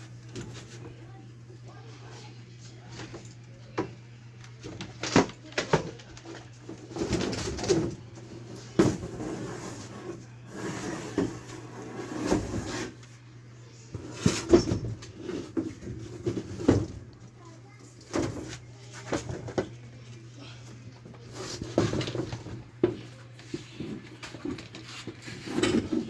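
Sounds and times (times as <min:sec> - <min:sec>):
scraping wood: 0:05.0 - 0:13.2.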